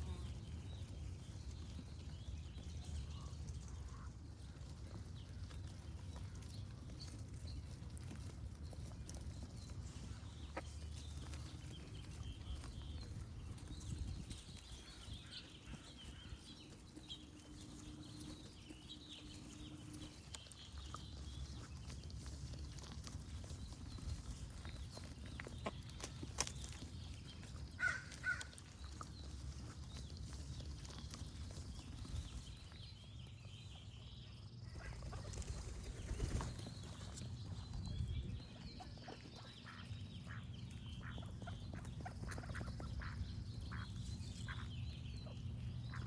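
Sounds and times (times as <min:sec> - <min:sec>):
small birds chirping faintly: 0:00.0 - 0:46.0
steady low rumble: 0:00.0 - 0:46.0.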